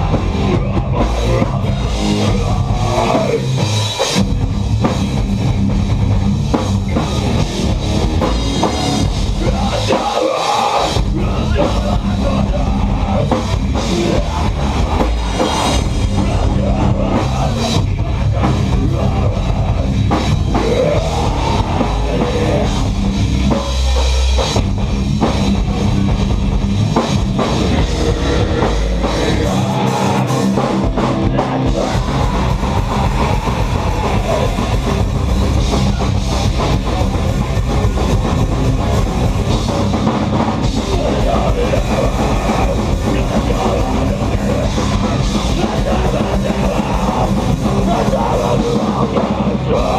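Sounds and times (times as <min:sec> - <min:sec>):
drum kit with cymbals: 0:00.0 - 0:49.9
live rock band playing: 0:00.0 - 0:49.9.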